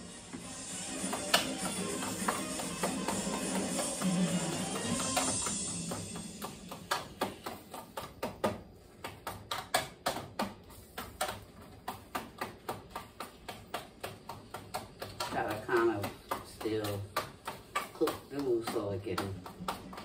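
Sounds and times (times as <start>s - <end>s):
background music: 0.0s - 7.8s.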